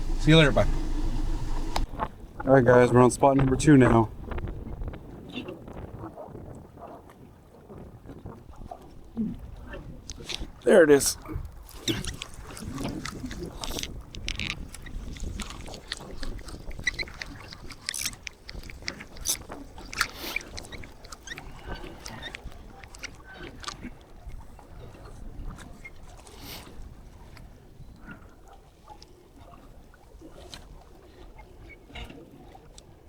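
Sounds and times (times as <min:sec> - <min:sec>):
water splashing: 0:00.0 - 0:01.9.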